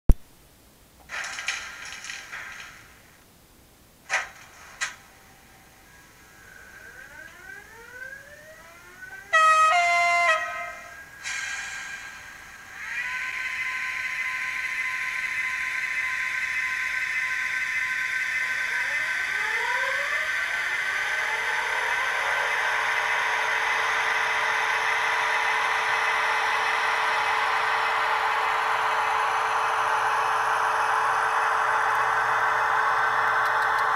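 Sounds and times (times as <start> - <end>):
hissing drone with held tones: 5.0 - 7.9, 10.3 - 33.9
rising whines: 5.4 - 33.9
toy locomotive sound effects: 8.8 - 33.9
loud horn blast: 9.4 - 10.9.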